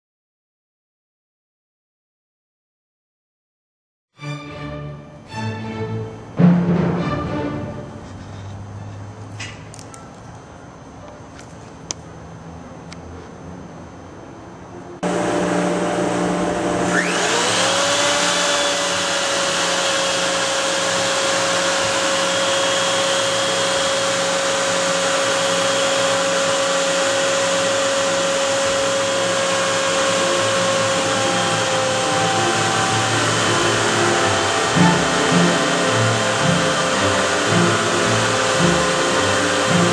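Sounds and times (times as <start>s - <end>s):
router motor whine: 15.0s - 39.9s
rushing machine noise: 15.0s - 39.9s.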